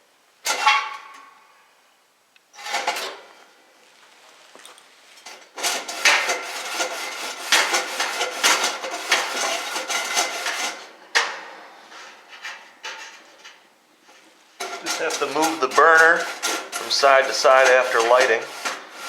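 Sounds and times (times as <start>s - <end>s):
metal burner scraping and rattling: 2.5s - 3.5s, 5.1s - 19.0s.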